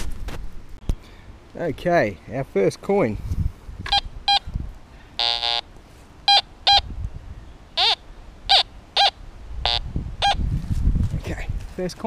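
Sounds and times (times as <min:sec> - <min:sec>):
metal detector beeps: 0:03.8 - 0:04.4, 0:05.2 - 0:05.6, 0:06.3 - 0:06.9, 0:07.8 - 0:10.4.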